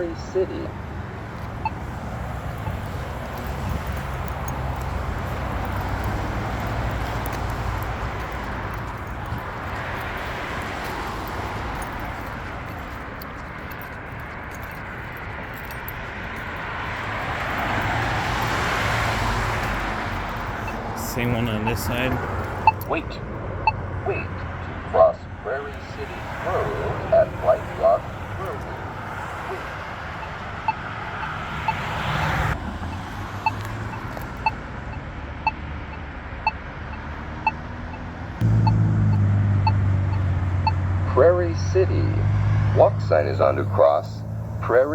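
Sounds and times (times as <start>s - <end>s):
road traffic passing: 0.0s - 44.9s
push button locator tone ticking: 20.5s - 23.1s.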